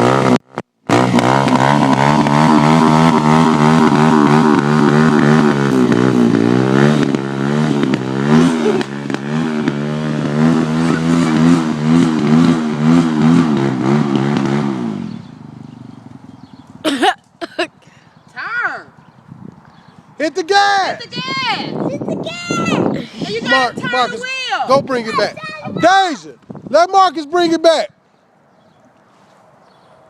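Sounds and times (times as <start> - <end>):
atv engine revving: 0.0 - 17.4.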